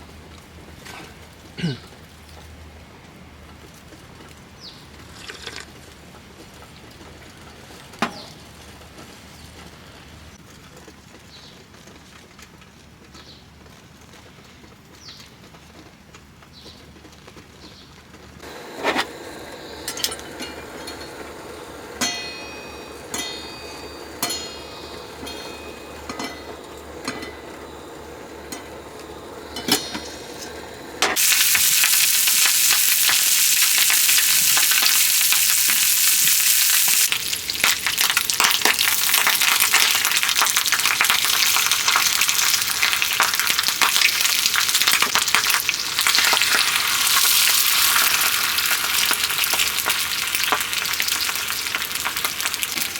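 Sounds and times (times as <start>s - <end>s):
food sizzling in a hot pan: 18.4s - 26.1s, 31.2s - 52.9s.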